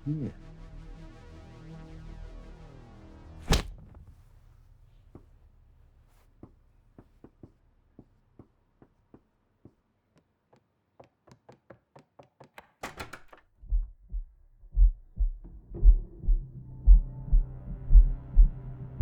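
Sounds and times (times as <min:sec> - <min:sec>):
deep thumps in pairs: 0:03.4 - 0:04.0, 0:13.6 - 0:17.0.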